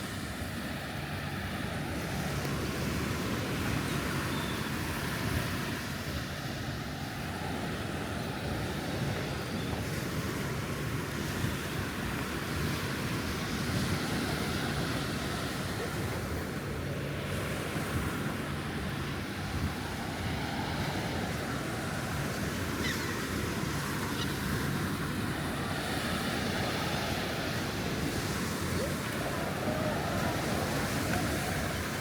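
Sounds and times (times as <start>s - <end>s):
surf washing onto beach: 0.0s - 32.0s
wind rumbling on microphone: 7.5s - 32.0s.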